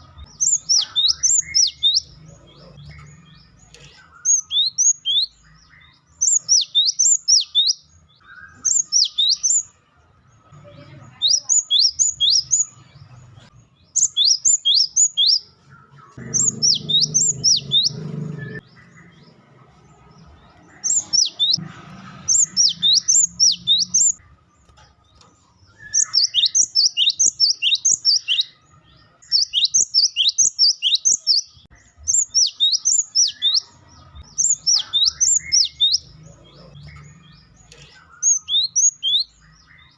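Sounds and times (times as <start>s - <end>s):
bird chattering calls: 16.2s - 19.2s, 22.3s - 24.2s, 34.3s - 37.3s.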